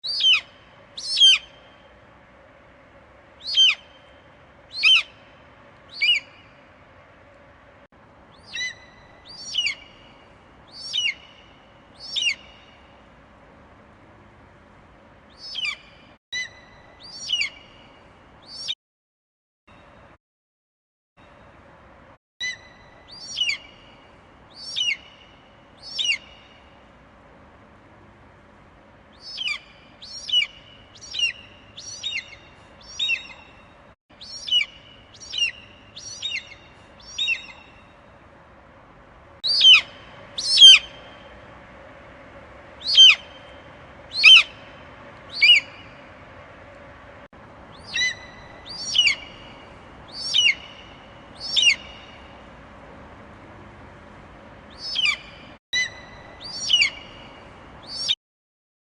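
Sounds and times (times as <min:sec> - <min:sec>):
eagle calling: 0:00.1 - 0:01.6, 0:03.4 - 0:04.0, 0:04.7 - 0:05.3, 0:10.8 - 0:11.4, 0:12.0 - 0:12.6, 0:22.4 - 0:23.7, 0:24.6 - 0:25.1, 0:29.2 - 0:33.4, 0:34.2 - 0:37.7, 0:39.4 - 0:41.0, 0:42.8 - 0:44.7, 0:45.3 - 0:46.0, 0:47.7 - 0:52.2, 0:54.8 - 0:57.2.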